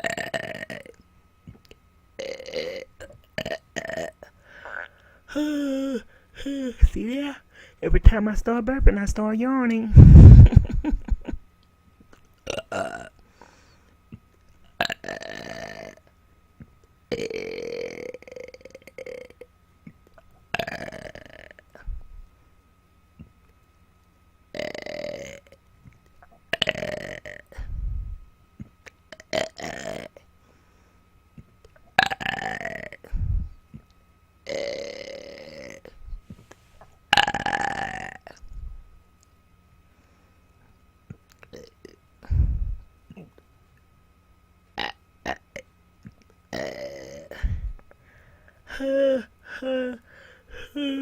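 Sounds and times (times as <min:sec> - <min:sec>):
woman burping: 0:00.0 - 0:00.9, 0:02.2 - 0:06.8, 0:12.4 - 0:13.1, 0:17.1 - 0:19.4.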